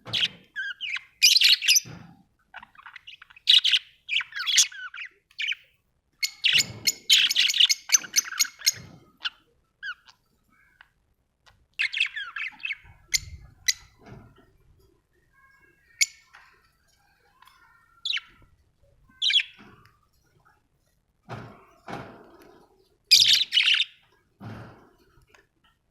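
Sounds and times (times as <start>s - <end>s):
budgerigars chirping and warbling: 0.1s - 10.8s, 11.8s - 14.3s, 17.4s - 18.5s, 19.1s - 19.8s, 22.0s - 24.6s.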